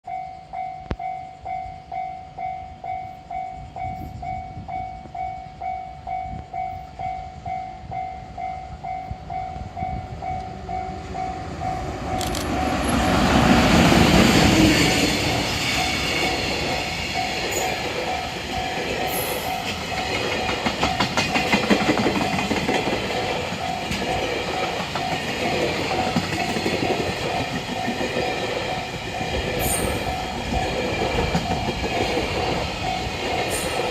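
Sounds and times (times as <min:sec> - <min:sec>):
freight train passing: 0:00.0 - 0:33.9
level-crossing warning bell dinging: 0:00.0 - 0:33.9
wheels clattering over rail joints: 0:13.7 - 0:33.4.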